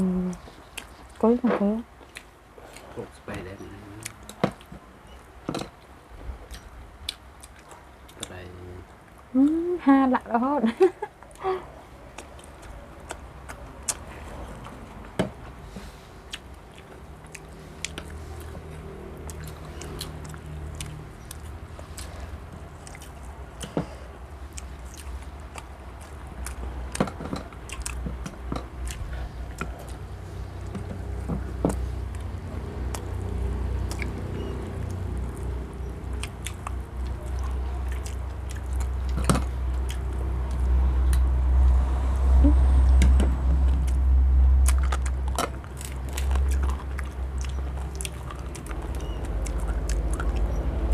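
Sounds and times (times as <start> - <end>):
people chewing: 0.0 - 9.7, 10.7 - 41.8, 42.4 - 50.9
low rumble: 40.3 - 50.9.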